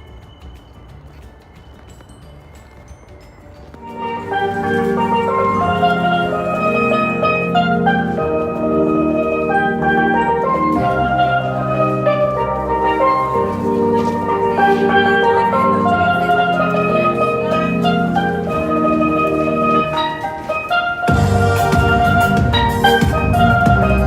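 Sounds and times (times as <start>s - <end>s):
steel pan-like notes: 0.0s - 24.0s
drums and bass: 21.1s - 24.0s.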